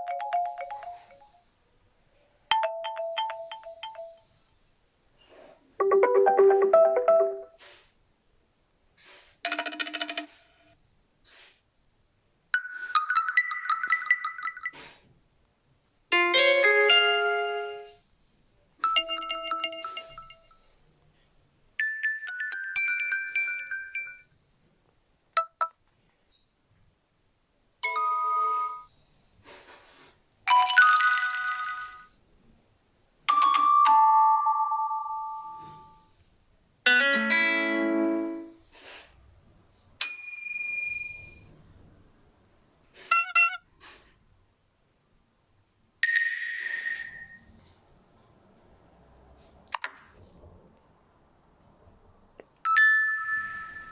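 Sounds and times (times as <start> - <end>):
phone notification chimes: 0.0 - 1.2, 5.8 - 7.6.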